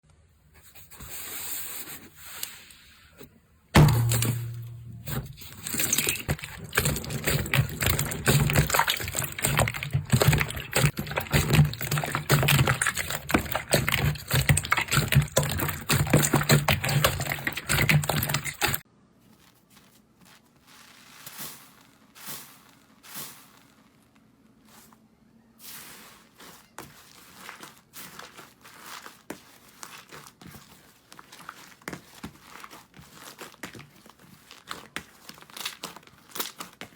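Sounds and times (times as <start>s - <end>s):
slime squeezed wet crackles: 3.9s - 18.8s.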